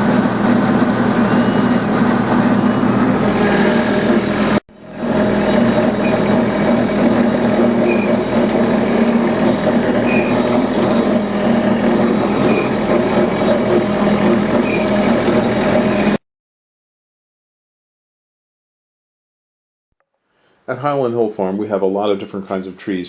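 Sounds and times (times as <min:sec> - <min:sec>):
engine droning hum: 0:00.0 - 0:16.2.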